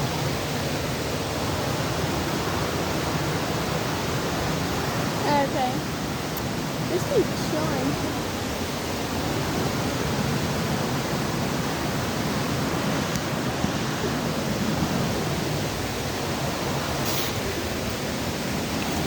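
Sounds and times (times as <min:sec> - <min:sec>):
waterfall rushing: 0:00.0 - 0:19.0.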